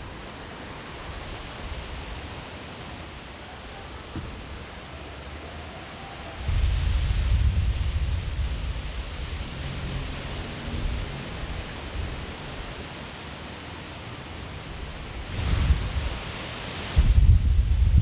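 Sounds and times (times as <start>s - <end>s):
gusty wind buffeting microphone: 0.0s - 3.1s, 6.4s - 13.2s, 14.4s - 18.0s.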